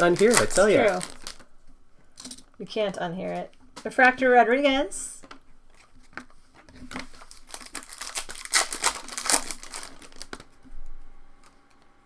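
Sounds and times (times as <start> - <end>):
foil wrapper crinkling and tearing: 0.0 - 1.5, 5.7 - 10.6.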